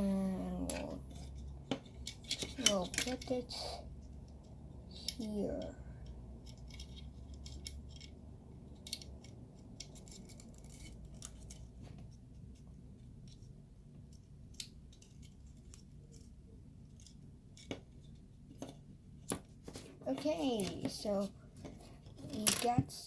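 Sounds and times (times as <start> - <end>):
plastic parts clicking: 0.6 - 3.3, 6.4 - 11.6.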